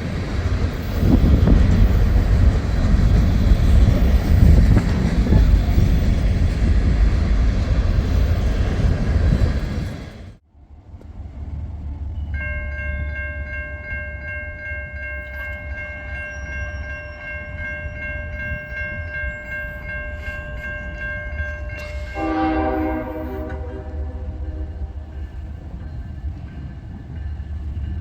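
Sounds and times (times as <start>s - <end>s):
passing train rumble: 0.0s - 28.0s
train horn chord: 21.8s - 25.2s.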